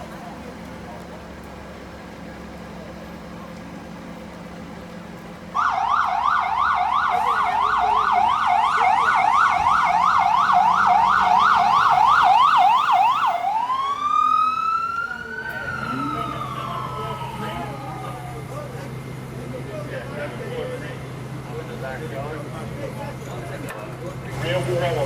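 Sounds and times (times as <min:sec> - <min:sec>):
low engine and traffic hum: 0:00.0 - 0:25.0
electronic siren yelp and wail: 0:05.6 - 0:18.5.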